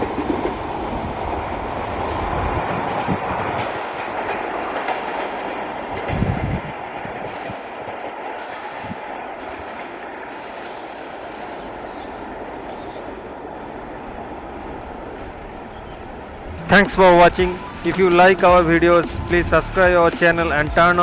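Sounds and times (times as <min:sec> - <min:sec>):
train wheels clattering over rail joints: 0:00.0 - 0:16.8.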